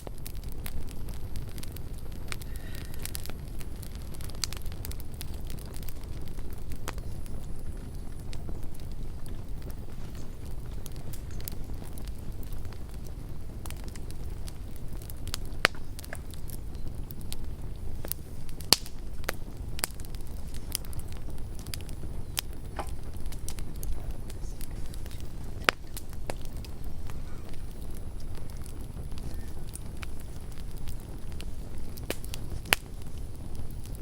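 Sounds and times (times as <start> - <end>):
burning wood crackling and popping: 0.0 - 34.0
campfire low rumble: 0.0 - 34.0.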